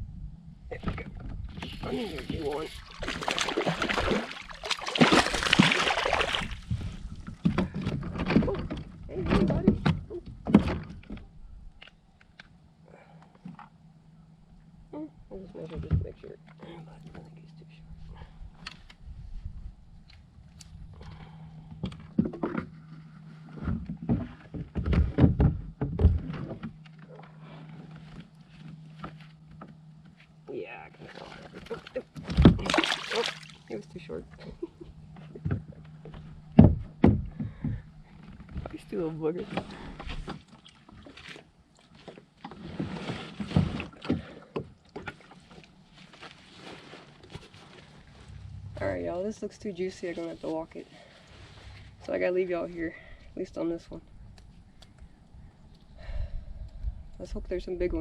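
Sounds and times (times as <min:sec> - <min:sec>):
low steady hum: 0:00.0 - 0:58.0
knocks and clatter in a kayak: 0:00.7 - 0:11.4, 0:21.2 - 0:27.4, 0:31.2 - 0:32.8, 0:34.6 - 0:46.3
paddle splashing in water: 0:01.7 - 0:07.2, 0:31.1 - 0:33.7.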